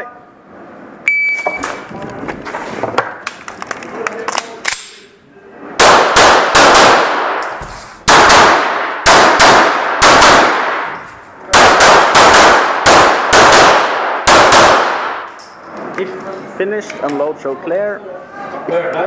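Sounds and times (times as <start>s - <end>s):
pistol shots with ringing echo: 5.8s - 15.4s.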